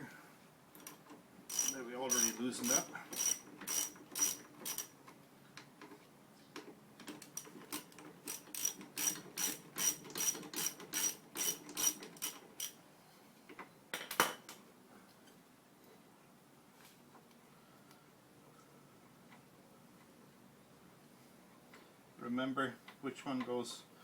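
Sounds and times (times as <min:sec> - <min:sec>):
ratchet wrench clicking: 0:00.8 - 0:04.9, 0:07.3 - 0:12.8.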